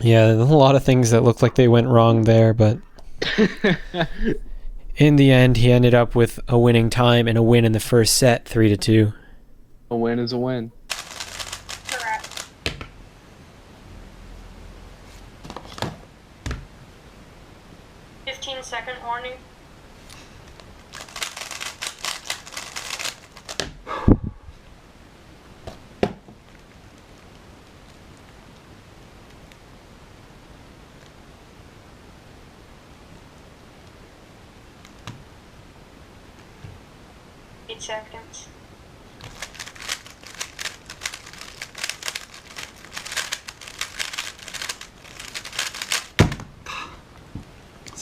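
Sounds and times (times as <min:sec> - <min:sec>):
plastic cube clicking: 0:39.2 - 0:46.2.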